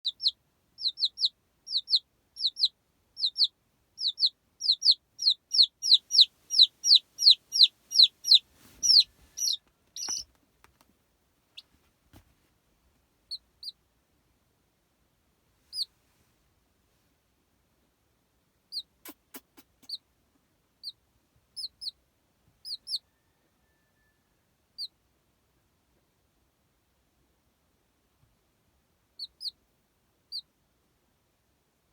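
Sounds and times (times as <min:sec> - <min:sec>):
baby chicks peeping: 0:00.0 - 0:10.8, 0:13.2 - 0:13.8, 0:15.7 - 0:15.9, 0:18.7 - 0:20.1, 0:20.8 - 0:25.0, 0:29.1 - 0:29.6, 0:30.2 - 0:30.5.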